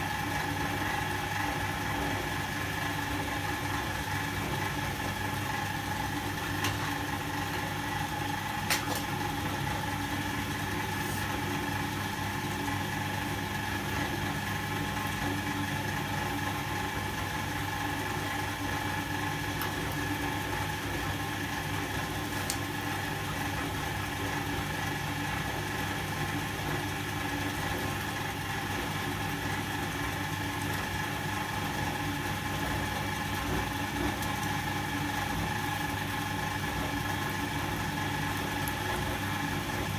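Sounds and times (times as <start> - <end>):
washing machine motor hum: 0.0 - 39.9.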